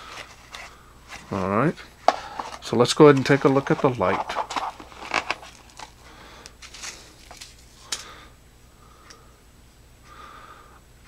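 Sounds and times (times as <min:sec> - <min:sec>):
flashlight handling clicks and rustles: 0:02.0 - 0:08.1.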